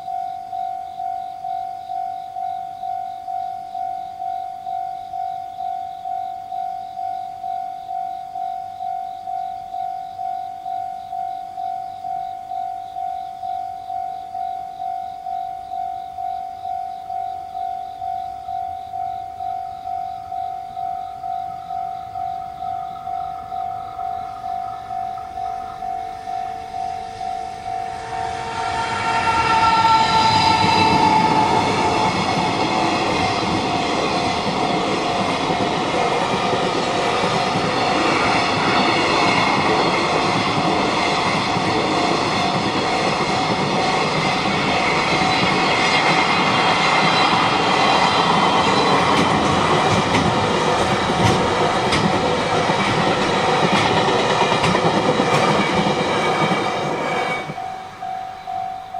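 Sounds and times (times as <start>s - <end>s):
level crossing bell ringing: 0.0s - 36.1s, 55.7s - 58.9s
train horn: 26.0s - 33.7s
train wheels clattering: 26.2s - 58.9s.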